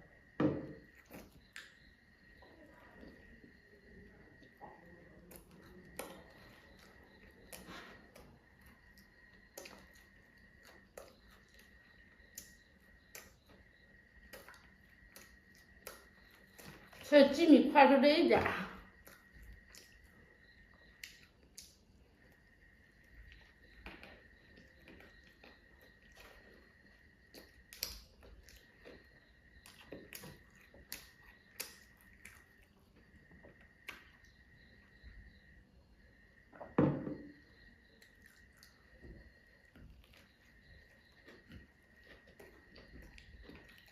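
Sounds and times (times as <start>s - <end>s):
person chewing: 5.2s - 17.0s, 18.9s - 34.2s, 38.0s - 43.9s.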